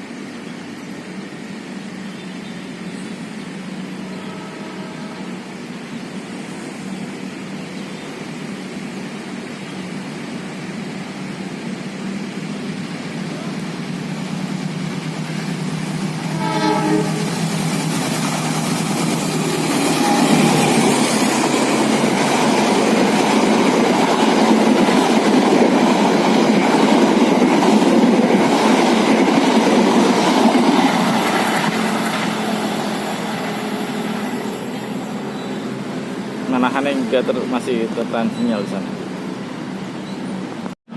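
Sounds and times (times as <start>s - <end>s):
train wheels rumbling on rails: 0.9s - 40.7s
train horn: 4.0s - 5.5s, 16.2s - 17.6s, 19.6s - 21.0s.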